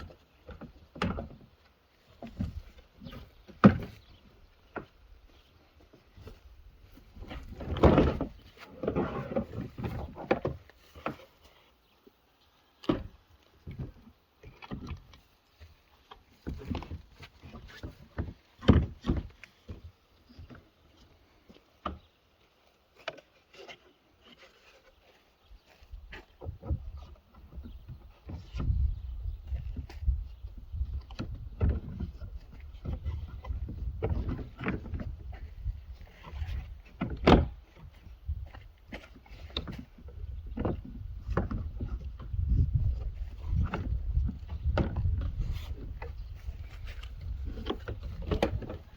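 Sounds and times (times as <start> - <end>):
wind rumble on microphone: 25.9 - 38.7, 39.4 - 48.9.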